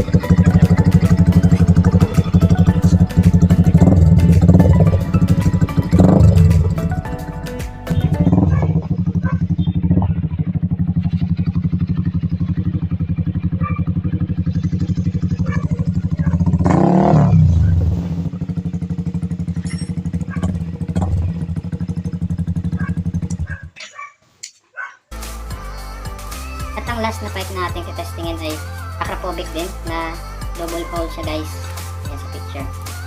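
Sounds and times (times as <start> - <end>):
motorcycle engine idling: 0.0 - 23.8.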